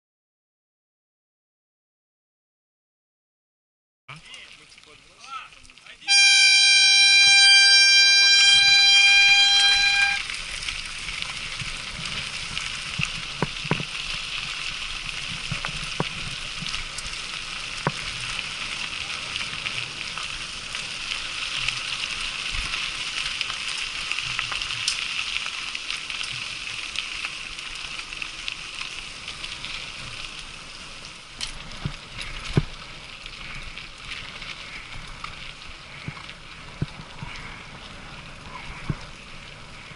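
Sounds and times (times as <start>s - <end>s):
horn steady loud note: 6.1s - 10.2s.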